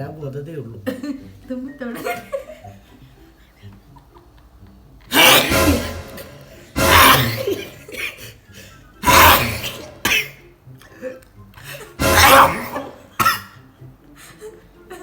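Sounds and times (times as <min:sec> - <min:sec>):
loud sneezes: 0:05.1 - 0:08.4, 0:09.0 - 0:10.4, 0:12.0 - 0:13.6.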